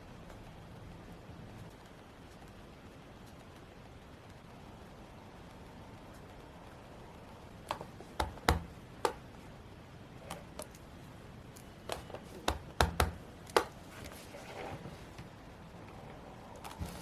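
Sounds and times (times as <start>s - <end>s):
stationery taps and clicks: 7.6s - 9.4s, 11.8s - 13.8s
paper rustling: 13.8s - 15.2s.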